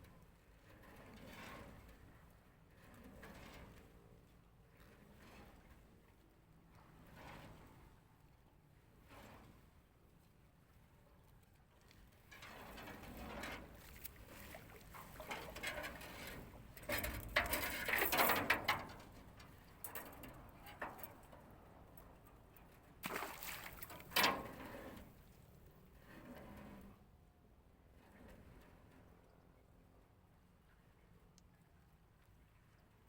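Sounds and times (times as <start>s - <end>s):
water splashing and sloshing: 11.8s - 20.3s, 22.8s - 25.6s
boat handling noise: 12.2s - 21.3s, 23.0s - 25.5s.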